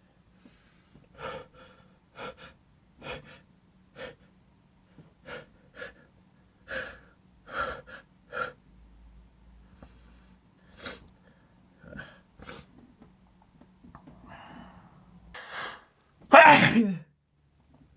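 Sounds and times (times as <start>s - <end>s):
man's gasping breaths: 14.1s - 16.0s.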